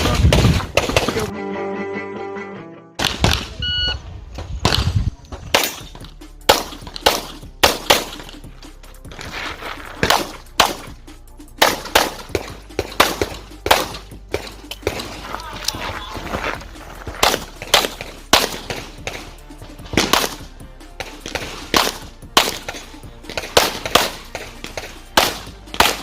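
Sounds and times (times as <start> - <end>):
handgun shots: 4.6 - 8.4, 10.0 - 11.0, 11.6 - 15.2, 17.2 - 19.3, 19.9 - 26.0.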